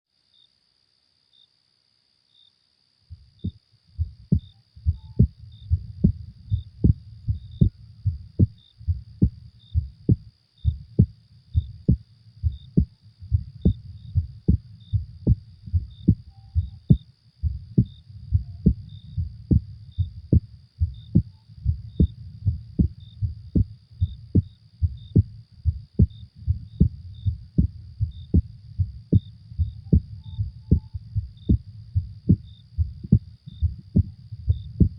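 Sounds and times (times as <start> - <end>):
high night ambience with pips: 0.2 - 34.9
heartbeat thumping: 3.1 - 34.9.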